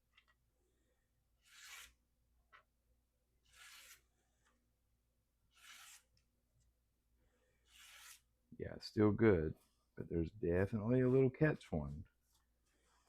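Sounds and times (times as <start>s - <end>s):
blade slicing through paper: 1.4s - 2.0s, 3.5s - 4.0s, 5.5s - 6.1s, 7.7s - 8.3s.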